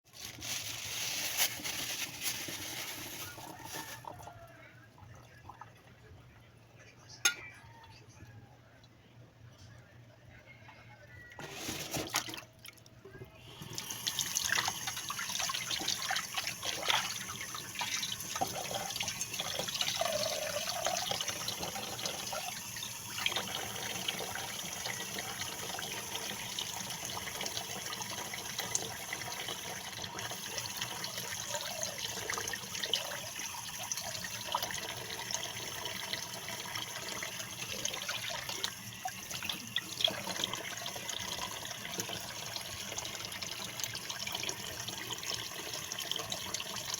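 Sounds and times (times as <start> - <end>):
tap water running into sink: 13.6 - 46.9.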